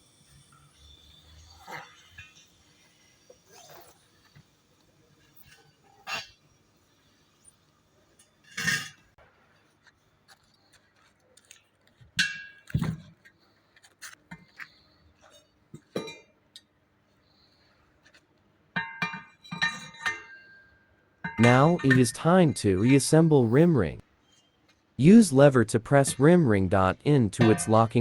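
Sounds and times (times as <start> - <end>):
steel tools clanking on wheel rim: 18.8 - 23.6, 27.4 - 28.0.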